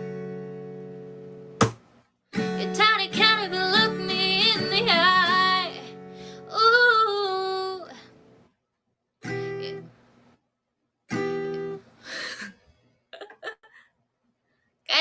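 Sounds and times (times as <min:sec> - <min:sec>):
acoustic guitar strumming: 0:02.4 - 0:06.5, 0:09.2 - 0:09.9, 0:11.1 - 0:11.8
woman singing: 0:02.4 - 0:08.1.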